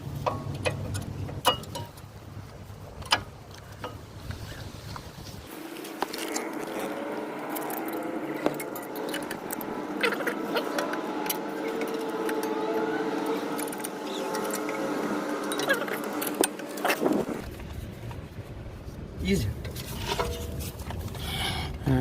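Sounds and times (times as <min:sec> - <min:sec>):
steady mechanical hum: 0:00.0 - 0:22.0
metallic clicks of brake parts: 0:00.1 - 0:04.4.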